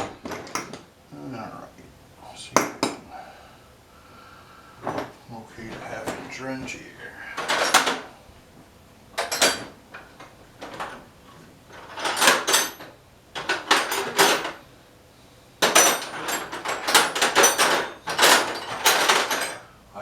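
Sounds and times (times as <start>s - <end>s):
metal tools clattering in a drawer: 0.0s - 0.9s, 4.8s - 6.4s, 7.4s - 8.2s, 9.2s - 14.6s, 15.6s - 19.7s.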